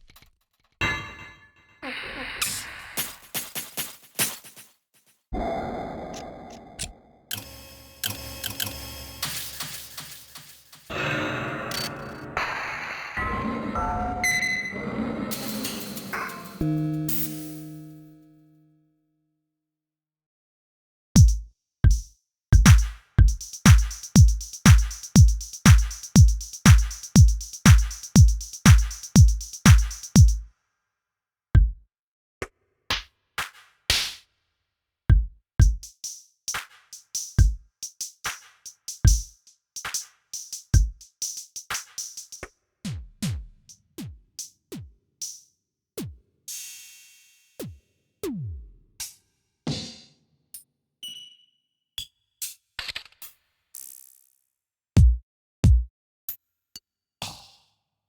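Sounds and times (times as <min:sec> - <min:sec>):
percussion hits: 0:07.3 - 0:12.8, 0:15.3 - 0:17.8, 0:21.2 - 0:30.4
deep drum hits: 0:22.6 - 0:30.4.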